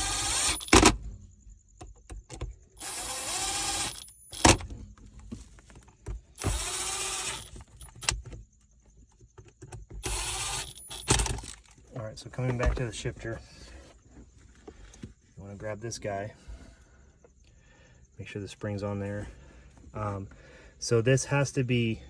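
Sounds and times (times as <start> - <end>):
cordless drill driving screws: 0.0 - 1.0, 2.8 - 4.6, 6.4 - 8.2, 10.0 - 11.6.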